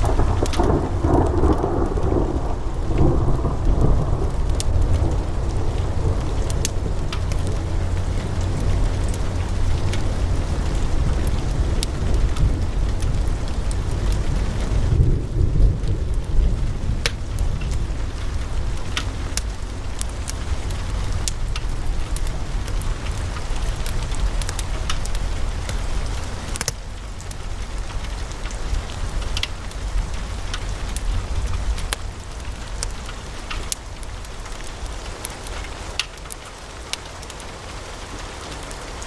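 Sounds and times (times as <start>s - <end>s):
low rumble of flames: 0.0s - 39.0s
wood fire crackling: 0.0s - 39.0s.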